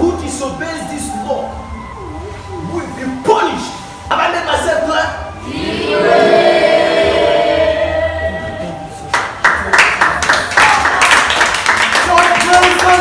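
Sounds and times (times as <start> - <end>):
group singing gospel: 5.4 - 9.0
hand clapping: 9.1 - 13.0.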